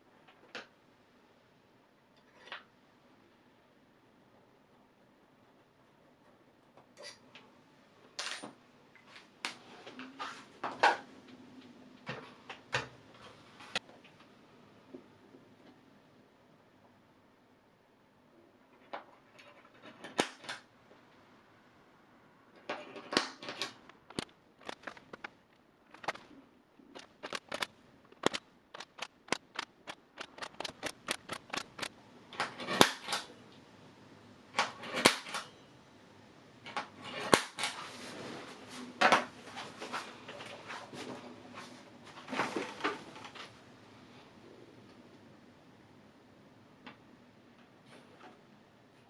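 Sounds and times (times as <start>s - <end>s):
hard parts clicking and knocking: 26.9s - 33.3s.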